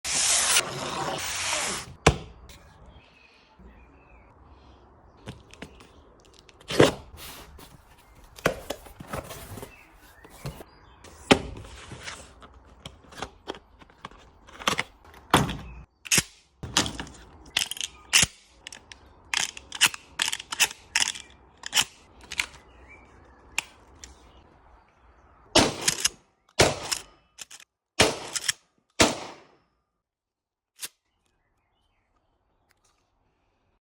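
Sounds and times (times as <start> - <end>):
scraping sounds: 0.1 - 2.0, 5.3 - 10.7.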